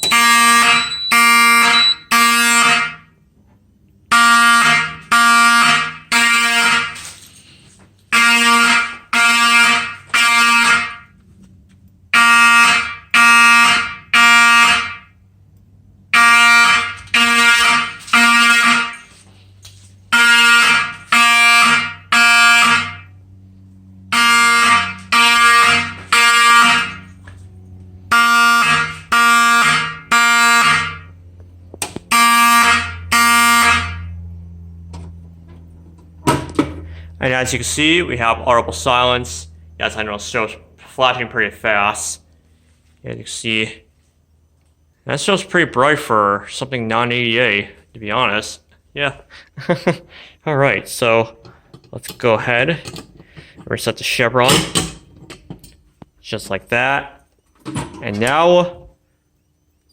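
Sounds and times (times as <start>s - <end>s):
fire alarm horn blasts: 0.0s - 3.3s, 4.0s - 11.2s, 12.1s - 15.4s, 16.0s - 36.2s.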